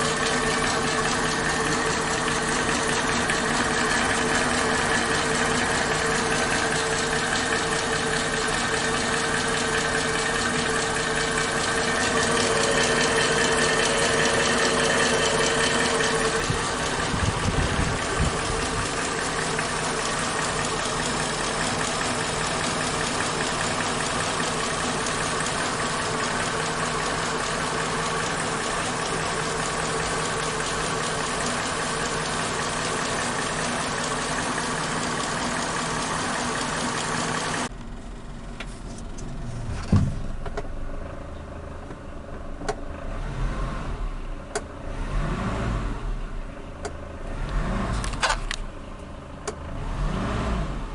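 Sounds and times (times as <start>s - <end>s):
motorcycle engine running: 0.0s - 38.2s
low rumble: 15.2s - 20.4s.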